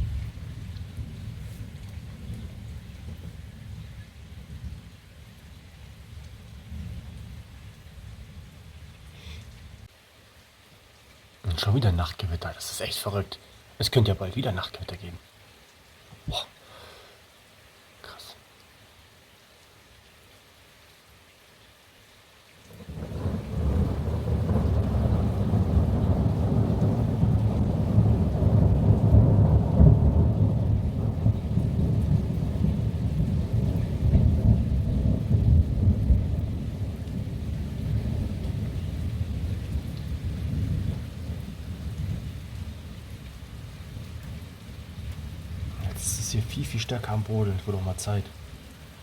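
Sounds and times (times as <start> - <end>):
deep thunder rumble: 0.0 - 4.9, 22.8 - 43.3
faint rain: 0.0 - 49.0.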